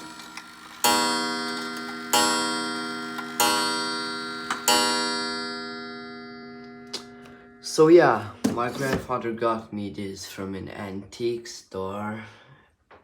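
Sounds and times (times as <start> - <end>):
wall clock striking bell: 0.0 - 8.9.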